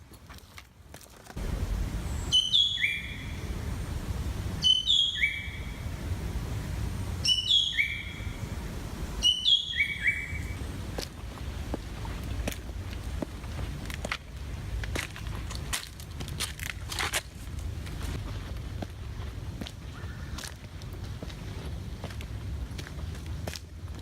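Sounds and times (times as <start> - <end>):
low rumble: 1.4 - 7.3
bird calling: 1.5 - 6.1, 7.1 - 10.9, 19.9 - 20.4.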